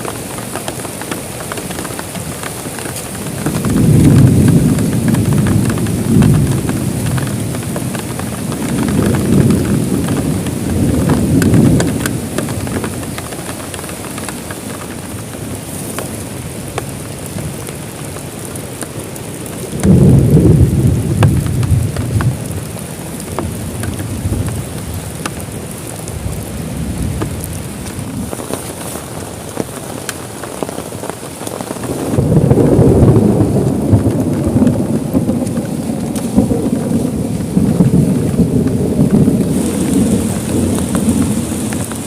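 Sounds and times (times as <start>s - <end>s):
heavy rain falling: 0.0s - 42.0s
raindrop ticks: 0.0s - 42.0s
thunder rolling: 3.2s - 14.3s, 19.6s - 28.4s, 31.7s - 42.0s.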